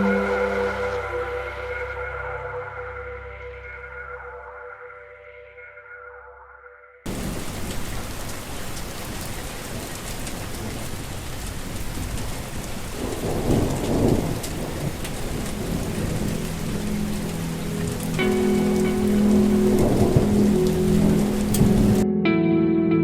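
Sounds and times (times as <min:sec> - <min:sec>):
heavy rain: 0:00.0 - 0:04.3, 0:07.1 - 0:22.0
thunder rumbling: 0:07.1 - 0:22.0.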